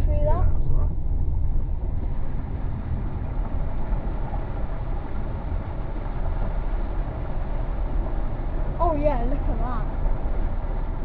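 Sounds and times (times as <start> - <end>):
engine and road rumble: 0.0 - 11.0
water washing against car: 0.1 - 11.0.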